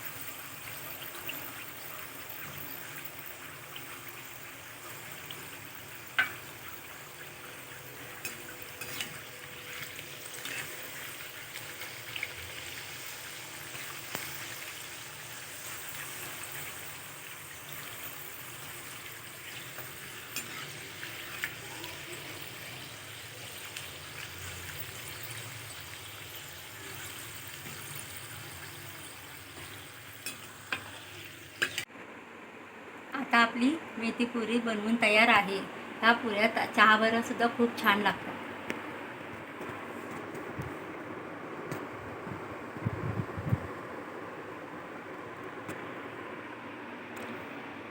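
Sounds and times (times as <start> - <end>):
puris deep-frying in hot oil: 0.0 - 31.9.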